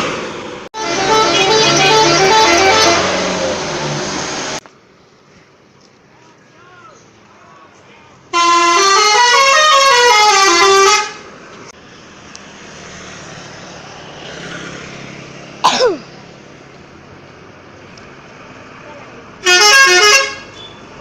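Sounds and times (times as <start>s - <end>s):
street noise: 0.0s - 21.0s
musical air horn melody: 0.8s - 3.6s, 8.3s - 11.3s, 19.4s - 20.6s.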